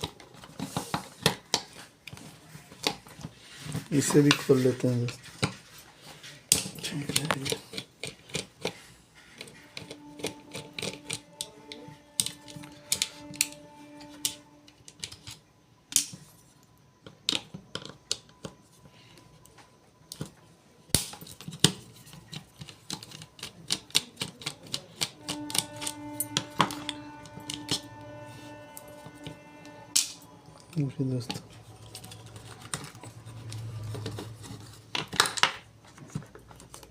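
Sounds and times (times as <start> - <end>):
quiet background music: 0.0 - 36.9
tool clicking on plastic parts: 6.5 - 8.8, 9.4 - 13.6, 21.0 - 27.9.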